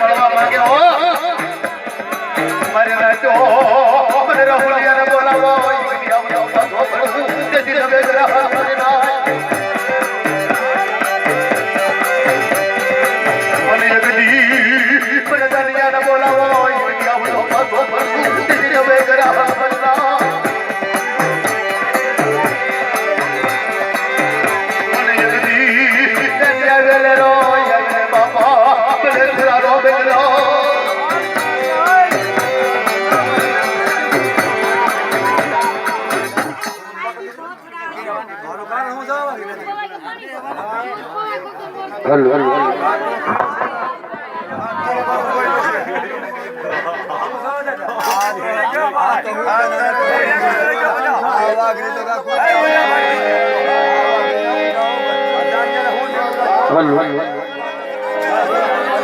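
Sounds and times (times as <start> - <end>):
fast percussion beat: 0.0 - 37.1
folk music with wavering melody: 0.0 - 37.1, 52.3 - 59.0
short melodic phrases: 52.3 - 59.0.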